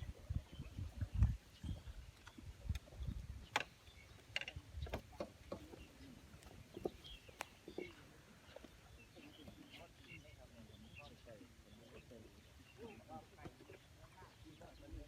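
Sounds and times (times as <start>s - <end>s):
wind buffeting microphone: 0.0s - 5.2s.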